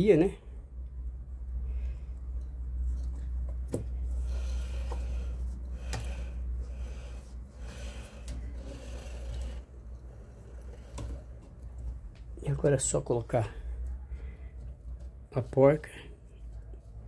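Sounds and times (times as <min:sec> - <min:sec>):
steady low hum: 0:00.0 - 0:17.0
scraping and rubbing: 0:02.8 - 0:13.4.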